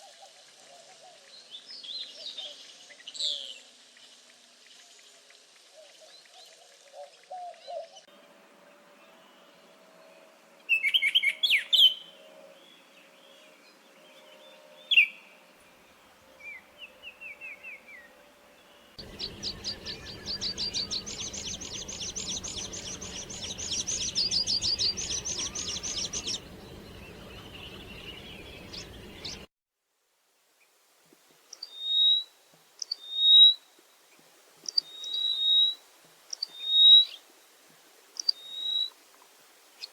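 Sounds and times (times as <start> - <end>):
small birds singing and chirping: 16.2 - 29.5
fast bird trill: 19.0 - 29.4.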